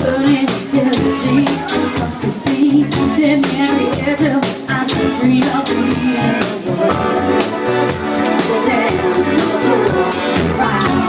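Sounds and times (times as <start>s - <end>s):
live band playing upbeat song: 0.0s - 11.0s.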